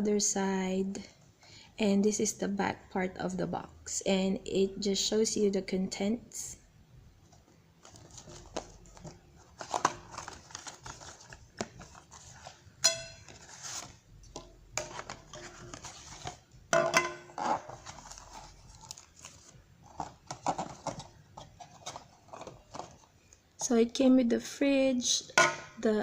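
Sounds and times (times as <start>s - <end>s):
plastic wrap crinkling: 7.8s - 14.0s, 17.3s - 23.2s.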